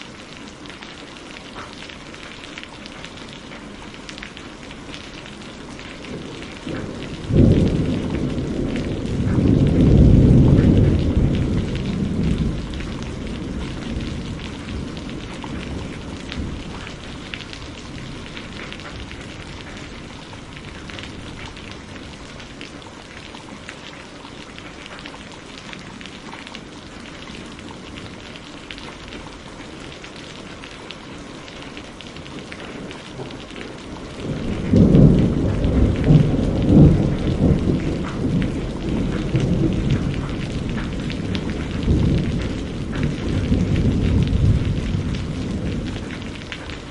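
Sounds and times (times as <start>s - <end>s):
heavy rain hissing: 0.0s - 46.9s
rolling thunder: 5.7s - 22.5s, 32.2s - 46.9s.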